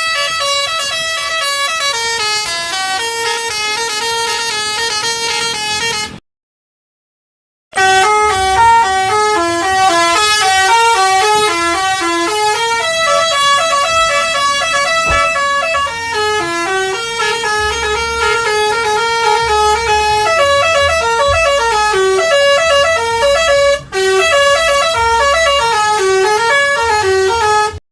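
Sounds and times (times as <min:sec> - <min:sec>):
multi-tone bus horn tune: 0:00.0 - 0:06.2, 0:07.7 - 0:27.8.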